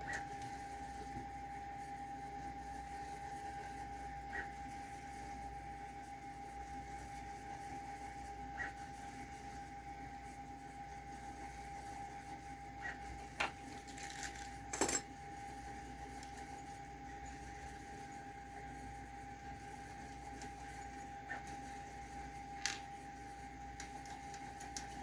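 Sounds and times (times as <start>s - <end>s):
small metal hardware clinking: 14.1s - 15.1s.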